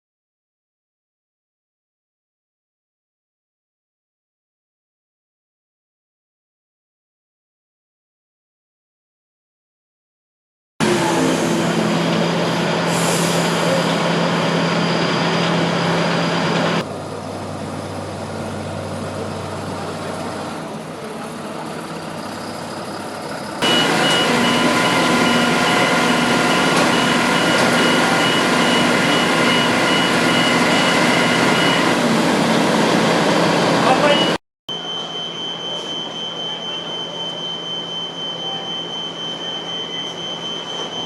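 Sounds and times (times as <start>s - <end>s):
truck engine running: 10.8s - 34.3s.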